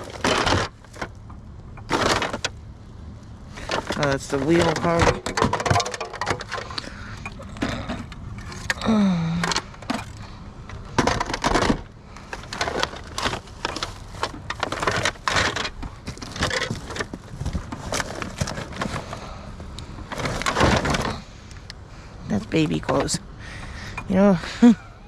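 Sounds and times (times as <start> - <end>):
trash rustling and crinkling: 0.0 - 24.8
person humming: 8.8 - 9.6.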